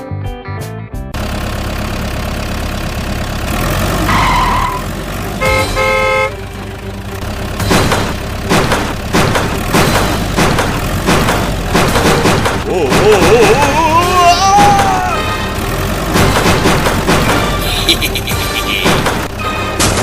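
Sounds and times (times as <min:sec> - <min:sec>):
cartoon truck engine running: 0:01.1 - 0:20.0
knocks: 0:18.8 - 0:20.0.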